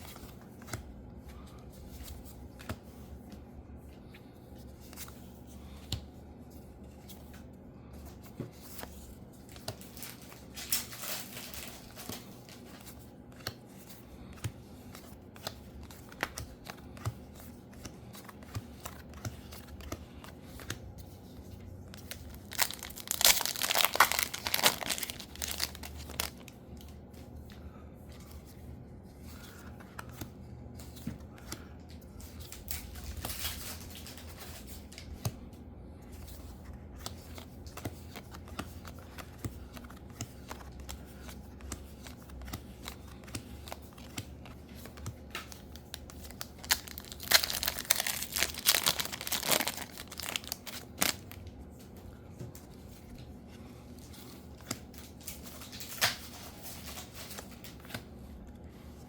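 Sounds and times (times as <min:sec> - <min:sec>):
foil packs tearing and crinkling: 0:22.4 - 0:26.5, 0:46.6 - 0:51.3.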